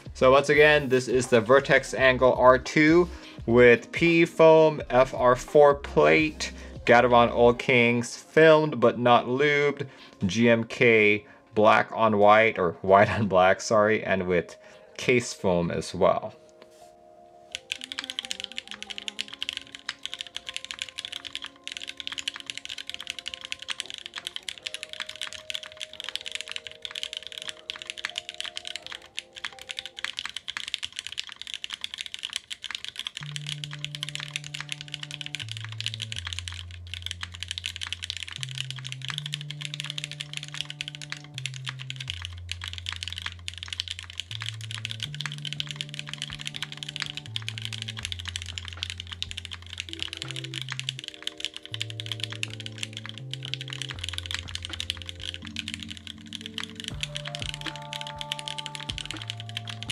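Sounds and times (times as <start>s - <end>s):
fast mechanical keyboard typing: 17.5s - 59.9s.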